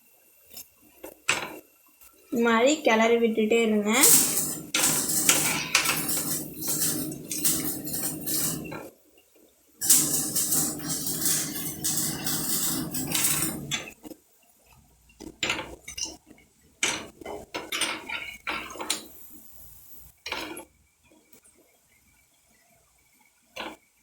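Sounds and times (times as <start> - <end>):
metal spoon scraping a pan: 4.0 - 8.9, 9.8 - 14.0.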